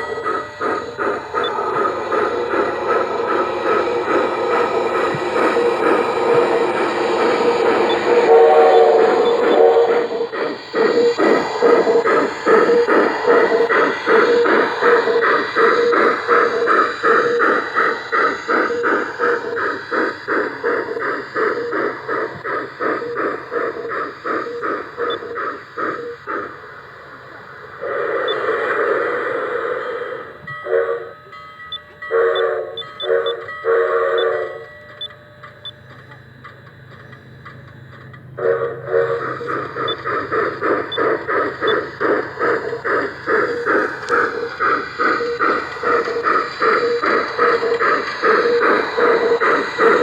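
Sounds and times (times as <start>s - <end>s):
steam hiss: 0.0s - 31.2s, 38.4s - 50.0s
model steam locomotive chuffing: 0.0s - 50.0s
train whistle blasts: 7.7s - 10.4s, 29.8s - 31.3s, 32.0s - 34.7s, 38.4s - 39.4s.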